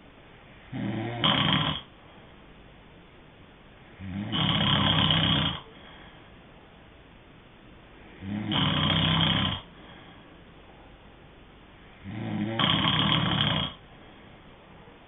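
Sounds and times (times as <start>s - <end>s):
person snoring: 0.7s - 1.9s, 4.0s - 5.8s, 8.2s - 9.7s, 12.0s - 13.8s.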